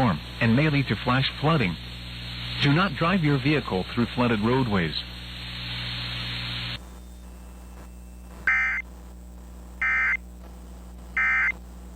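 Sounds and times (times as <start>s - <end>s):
radio static hiss: 0.0s - 11.9s
buzzy two-tone data squawks: 6.5s - 9.1s, 9.7s - 10.4s, 11.0s - 11.7s.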